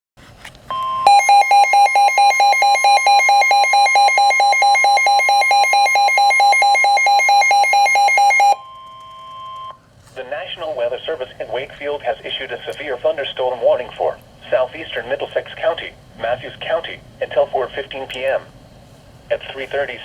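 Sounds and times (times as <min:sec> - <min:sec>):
rapid electronic alarm beeps: 0:00.8 - 0:09.8.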